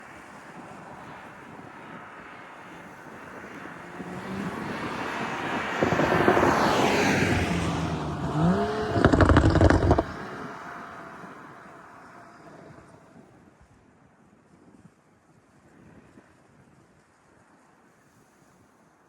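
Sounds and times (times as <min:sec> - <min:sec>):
car engine revving: 0:03.8 - 0:11.8
exhaust crackles and pops: 0:04.0 - 0:10.6.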